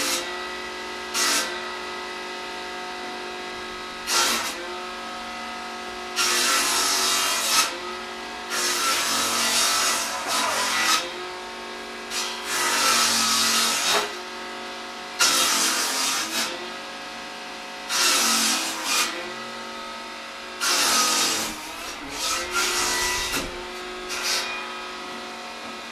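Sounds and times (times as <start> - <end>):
saw cutting wood: 0.0 - 25.9.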